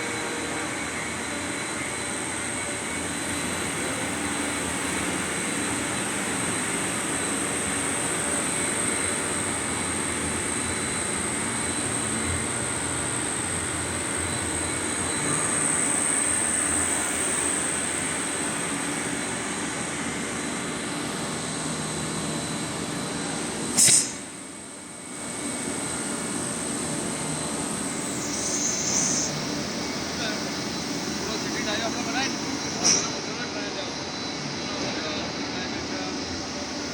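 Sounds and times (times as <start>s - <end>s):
industrial machinery noise: 0.0s - 36.9s
sharp click: 23.8s - 24.2s
high-pitched whine: 25.4s - 36.9s.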